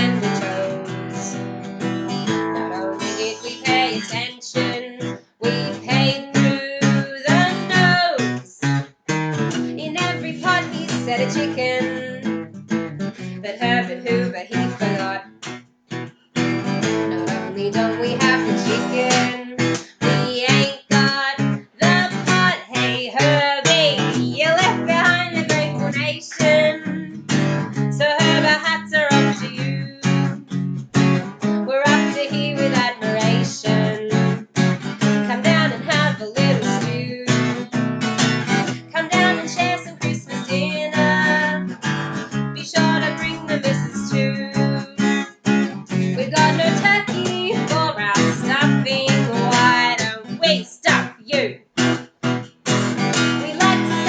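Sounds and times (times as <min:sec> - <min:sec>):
strummed acoustic guitar: 0:00.0 - 0:54.0
people singing: 0:02.6 - 0:07.9, 0:17.1 - 0:26.9, 0:38.8 - 0:41.6, 0:42.6 - 0:44.8, 0:53.4 - 0:54.0.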